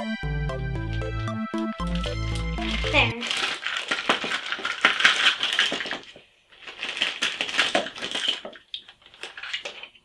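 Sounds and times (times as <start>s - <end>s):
plastic packaging crinkling: 1.8s - 10.0s.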